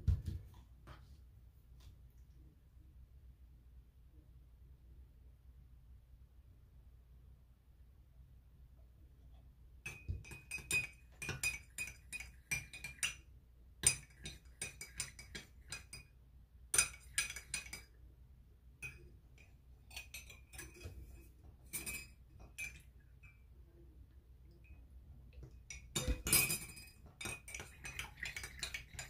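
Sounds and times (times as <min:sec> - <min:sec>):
teaspoon clinking in a cup: 0:09.9 - 0:16.1, 0:16.8 - 0:18.0, 0:18.8 - 0:23.4, 0:25.6 - 0:29.0.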